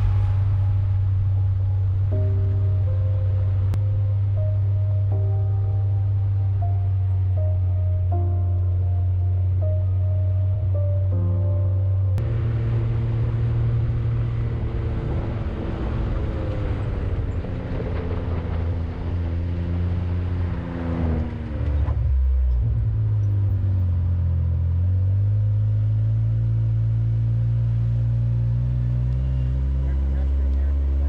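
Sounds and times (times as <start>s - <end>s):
wind noise: 0.0s - 3.8s
rough road noise: 0.0s - 31.0s
utility vehicle engine running: 0.0s - 31.0s.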